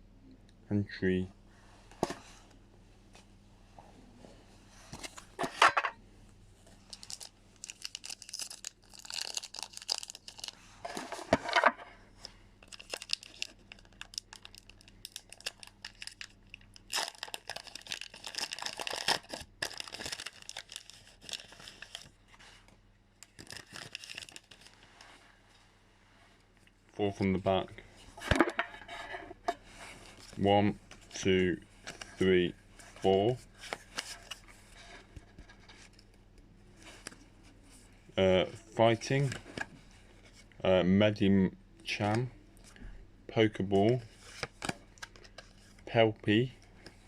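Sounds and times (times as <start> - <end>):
foil wrapper crinkling and tearing: 6.9 - 10.6, 12.6 - 22.2, 23.2 - 24.8.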